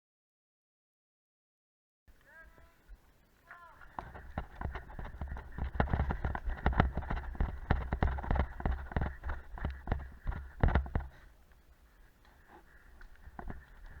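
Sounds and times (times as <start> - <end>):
running footsteps: 2.1 - 14.0
thumps and rattle: 3.9 - 11.3, 13.0 - 14.0.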